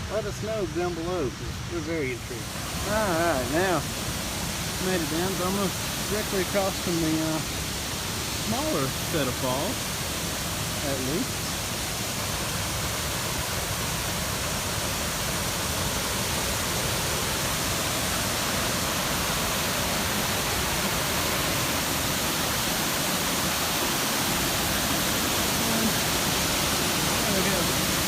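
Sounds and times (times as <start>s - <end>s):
waterfall rushing: 0.0s - 28.0s.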